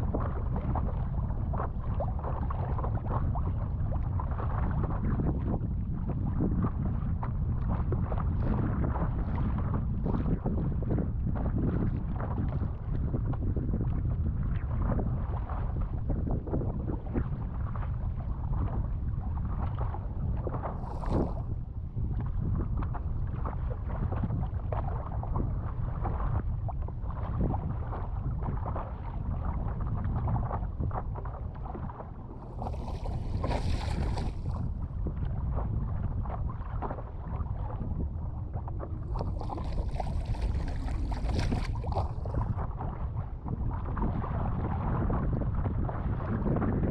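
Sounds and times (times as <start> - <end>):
wind buffeting microphone: 0.0 - 46.9
water sloshing around board: 20.5 - 21.6, 26.0 - 44.6.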